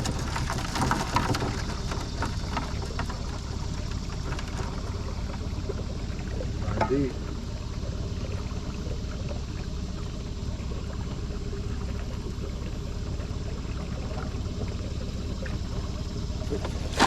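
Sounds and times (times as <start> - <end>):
steady low rumble: 0.0 - 17.0
water splashing against boat: 0.0 - 17.0.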